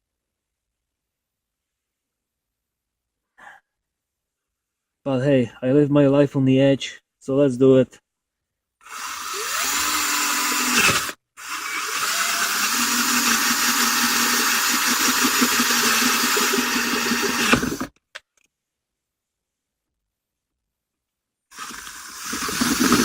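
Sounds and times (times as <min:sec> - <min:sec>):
cordless drill with hole saw whining: 0:08.8 - 0:17.9, 0:21.5 - 0:23.0.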